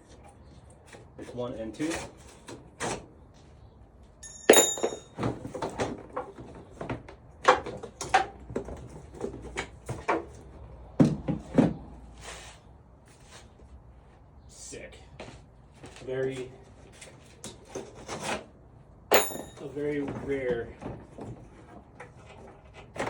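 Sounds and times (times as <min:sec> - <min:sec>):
sharp click with short ring: 0:04.2 - 0:05.1, 0:19.1 - 0:19.6.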